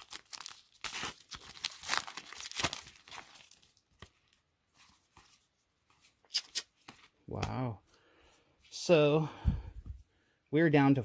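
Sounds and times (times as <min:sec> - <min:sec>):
wrapper tearing and crinkling: 0:00.0 - 0:04.1.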